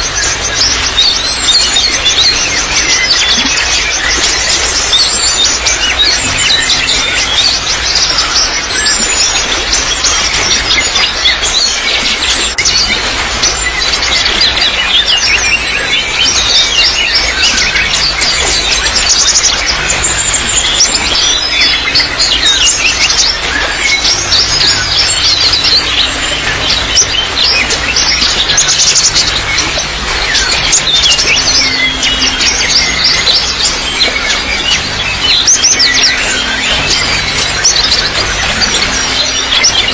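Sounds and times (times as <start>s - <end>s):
small birds chirping: 0.0s - 39.9s
trickle of running water: 0.0s - 39.9s.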